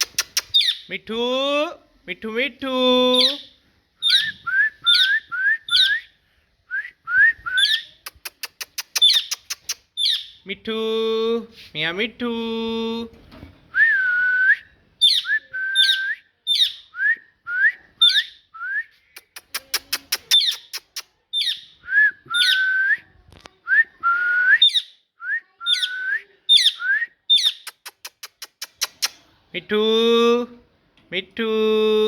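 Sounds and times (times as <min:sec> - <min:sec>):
sharp clicks: 0:00.0 - 0:00.6, 0:08.1 - 0:09.9, 0:19.2 - 0:21.1, 0:27.6 - 0:29.2.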